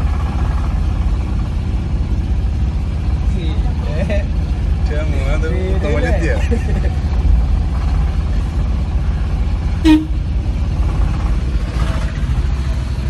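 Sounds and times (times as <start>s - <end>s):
road traffic rumble: 0.0s - 13.0s
vehicle horn toot: 9.8s - 10.2s.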